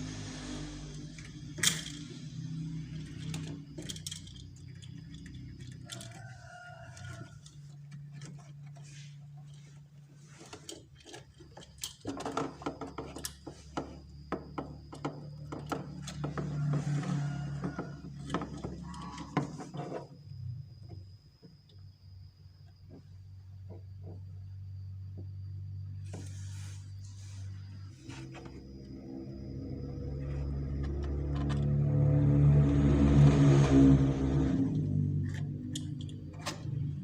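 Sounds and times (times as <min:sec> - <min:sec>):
low steady hum: 0:00.0 - 0:37.0
hands and tools clicking and knocking: 0:10.4 - 0:20.0.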